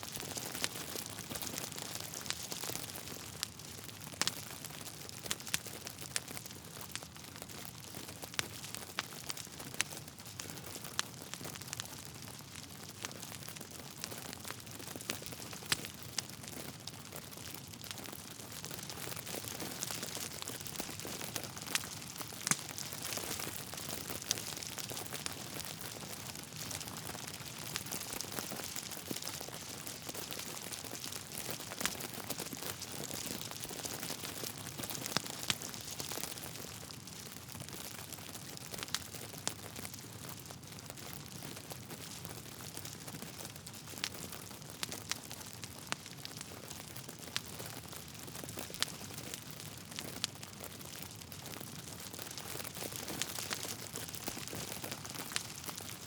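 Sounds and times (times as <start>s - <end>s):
wood fire crackling and popping: 0.0s - 56.0s.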